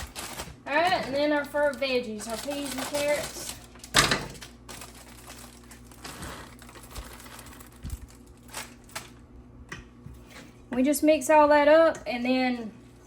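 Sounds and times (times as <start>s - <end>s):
plastic bag crinkling: 0.0s - 9.2s.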